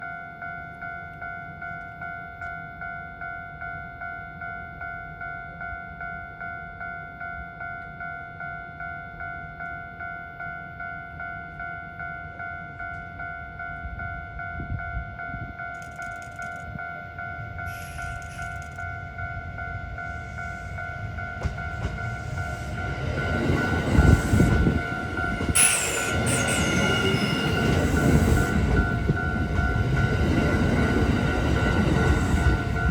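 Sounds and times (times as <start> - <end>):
electric train approaching: 10.8 - 32.9.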